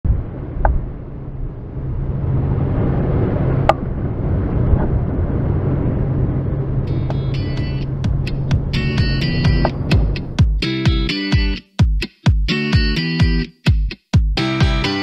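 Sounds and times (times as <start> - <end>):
wind noise: 0.0 - 10.6
motor boat engine droning: 0.4 - 10.4.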